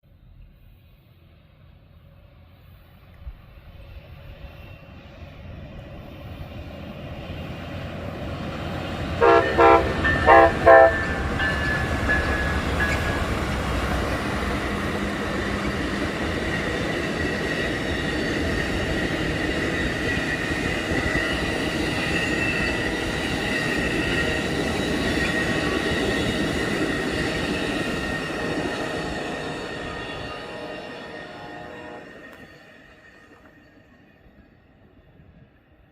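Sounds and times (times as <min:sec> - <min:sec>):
passing train rumble: 0:00.0 - 0:35.9
train horn blasts: 0:09.2 - 0:11.7, 0:30.3 - 0:32.4.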